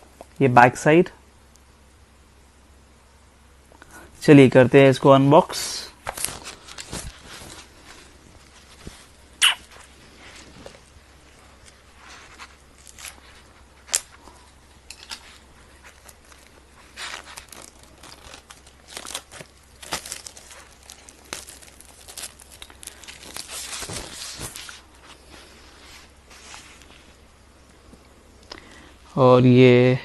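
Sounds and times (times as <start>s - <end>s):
plastic wrap crinkling and tearing: 6.0s - 10.8s, 11.6s - 14.2s, 14.8s - 25.1s.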